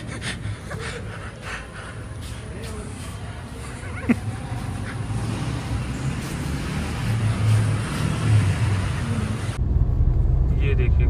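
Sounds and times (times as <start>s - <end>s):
car engine and tyre noise: 0.0s - 11.0s.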